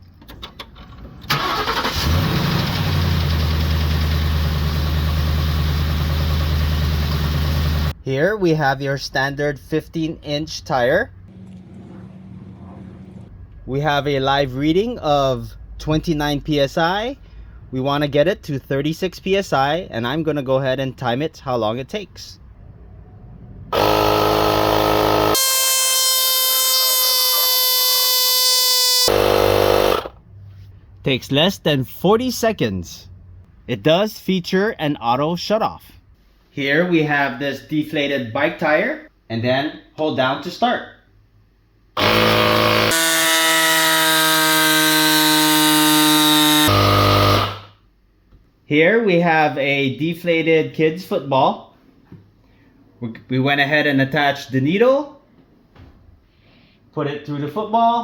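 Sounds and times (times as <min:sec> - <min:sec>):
car engine cranking: 0:00.4 - 0:04.0
air compressor motor buzzing: 0:23.7 - 0:30.2, 0:42.0 - 0:47.7.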